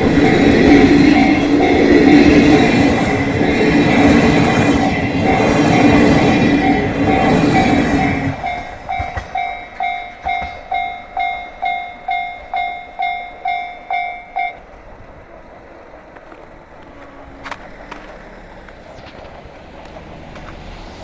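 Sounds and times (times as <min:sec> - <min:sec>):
crossing warning bell ringing: 0:00.0 - 0:15.0
train rumbling over crossing: 0:00.0 - 0:21.0.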